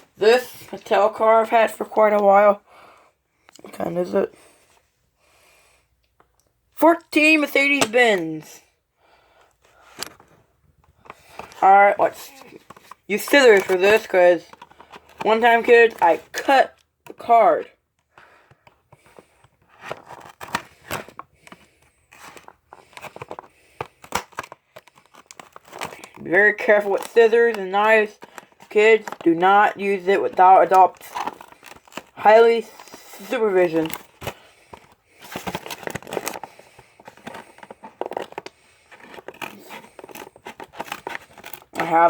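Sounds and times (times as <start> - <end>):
plastic crinkling: 9.6 - 16.4, 18.1 - 42.0
scissors snipping plastic: 11.0 - 16.5, 19.8 - 29.4, 30.2 - 42.0
packaging being cut open: 19.7 - 26.2, 28.2 - 29.2, 30.2 - 42.0.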